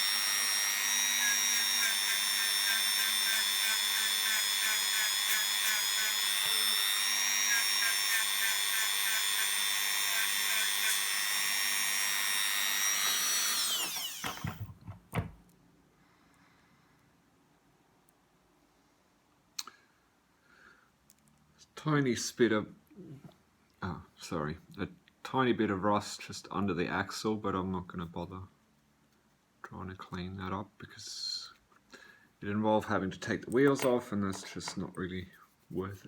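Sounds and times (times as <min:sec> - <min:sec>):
rotary tool whining: 0:00.0 - 0:14.7.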